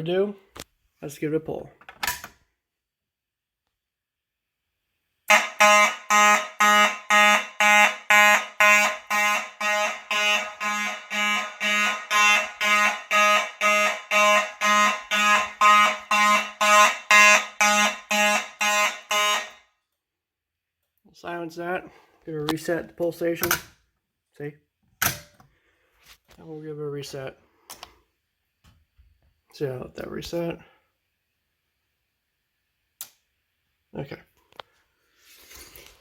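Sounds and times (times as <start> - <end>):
fire alarm horn blasts: 5.2 - 19.8.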